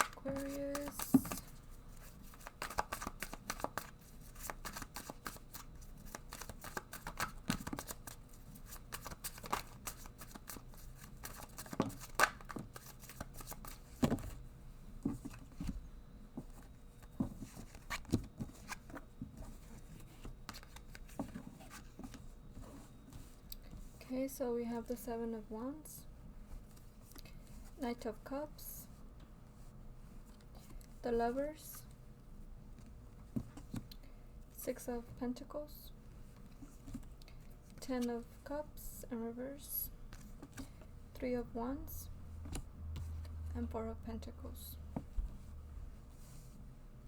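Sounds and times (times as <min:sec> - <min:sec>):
cards being shuffled: 0:00.0 - 0:14.4, 0:19.8 - 0:22.2.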